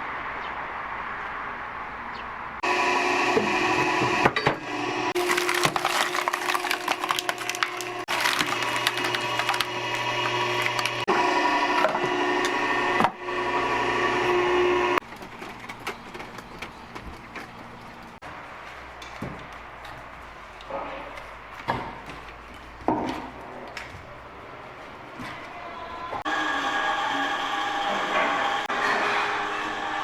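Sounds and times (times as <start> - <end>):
firewood knocking and clattering: 15.0 - 18.2.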